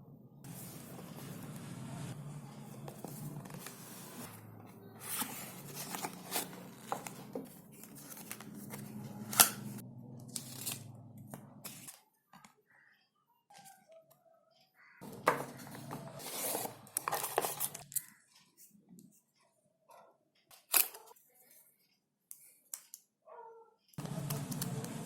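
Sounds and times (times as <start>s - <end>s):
packaging rustling and tearing: 5.0s - 9.8s, 10.4s - 10.8s, 15.5s - 18.1s.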